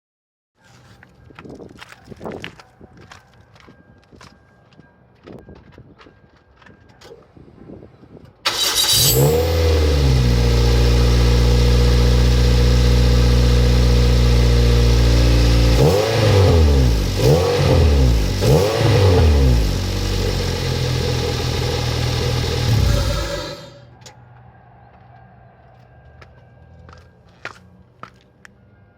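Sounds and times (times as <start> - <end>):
car engine idling and revving: 8.5 - 23.8.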